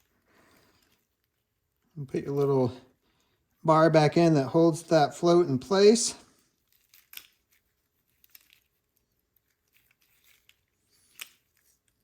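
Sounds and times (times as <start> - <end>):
small metal parts clicking: 6.6 - 12.0.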